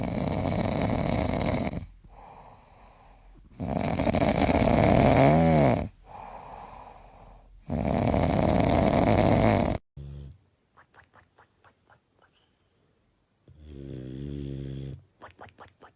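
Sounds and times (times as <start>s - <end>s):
dog snoring loudly: 0.0s - 2.5s, 3.5s - 6.0s, 7.6s - 10.4s, 13.5s - 15.0s.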